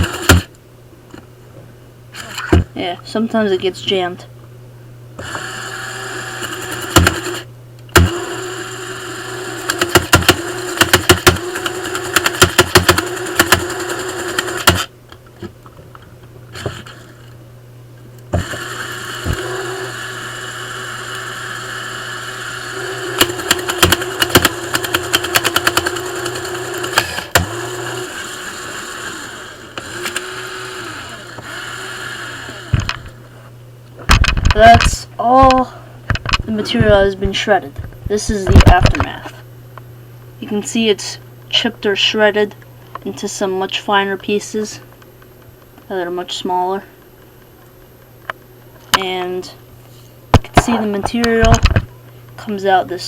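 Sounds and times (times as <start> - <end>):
toy wood chipper motor whining: 0.0 - 0.5, 2.1 - 2.6, 5.2 - 14.9, 16.5 - 17.1, 18.2 - 33.2.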